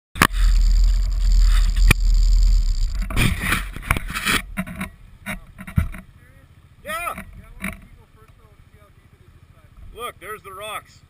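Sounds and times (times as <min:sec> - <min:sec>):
rough scraping and rushing: 0:00.1 - 0:08.4
off-road vehicle rumble: 0:00.1 - 0:11.0.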